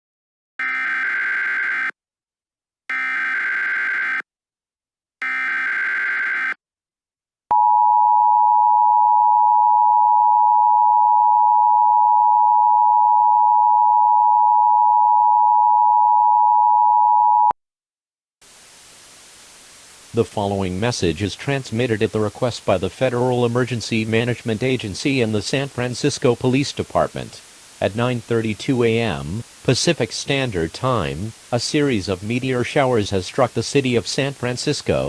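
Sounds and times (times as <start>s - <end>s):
static hiss: 18.4s - 35.0s.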